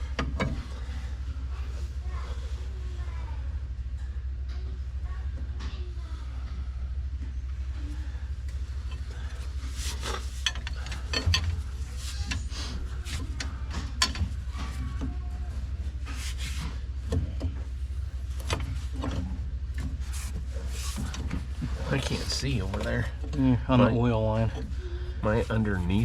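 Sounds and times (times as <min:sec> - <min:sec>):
steady low hum: 0:00.0 - 0:26.0
hand tools clanking on metal: 0:08.8 - 0:12.5, 0:13.1 - 0:14.3.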